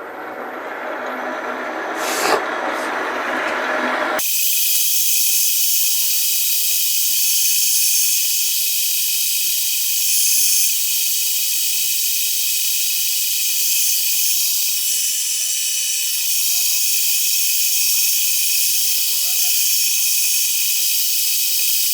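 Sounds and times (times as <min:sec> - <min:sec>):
machine tool cutting metal: 0:04.2 - 0:21.9.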